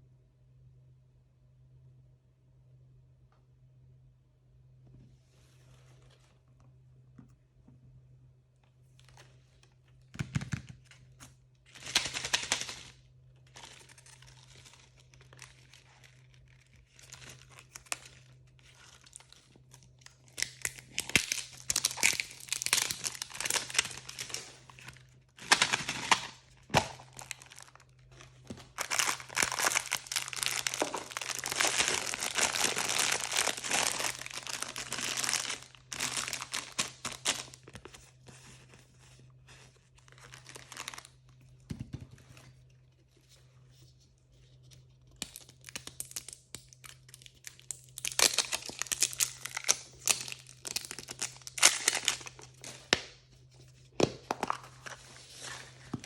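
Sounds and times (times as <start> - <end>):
faint low hum: 0.0 - 56.0
packaging crinkling and tearing: 11.7 - 38.1, 39.9 - 41.3, 44.6 - 53.2.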